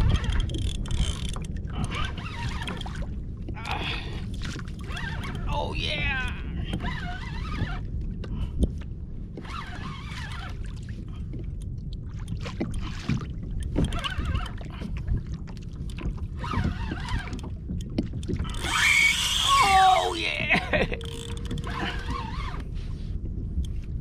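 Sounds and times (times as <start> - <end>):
fishing reel drag whining: 0.0 - 3.0, 4.8 - 5.5, 6.7 - 7.8, 9.4 - 10.6, 16.4 - 17.5, 18.4 - 22.6
water and hull noise: 0.0 - 24.0.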